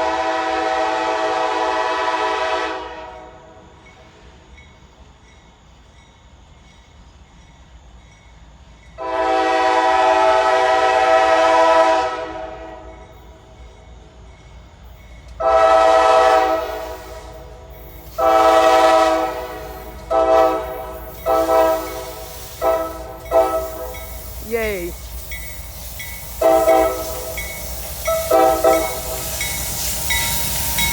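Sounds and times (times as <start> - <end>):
locomotive horn blasts: 0.0 - 3.4, 9.0 - 12.9, 15.4 - 17.0, 18.2 - 24.0, 26.4 - 27.4, 28.2 - 29.3.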